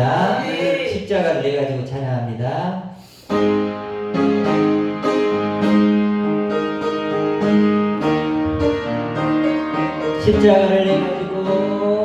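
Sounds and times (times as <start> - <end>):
keyboard playing sustained chords: 3.4 - 12.0.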